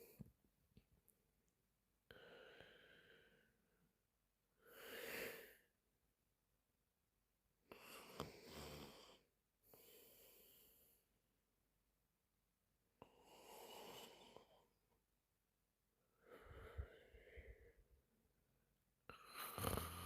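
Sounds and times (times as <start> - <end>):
woman snoring softly: 7.7 - 9.3, 13.0 - 14.6, 19.1 - 20.0.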